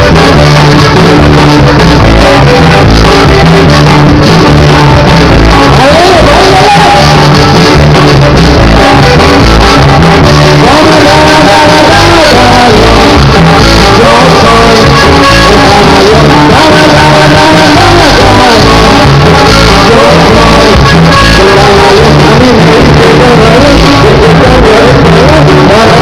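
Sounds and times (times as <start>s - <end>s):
person singing: 0.0s - 26.0s
steady bass beat: 0.0s - 26.0s.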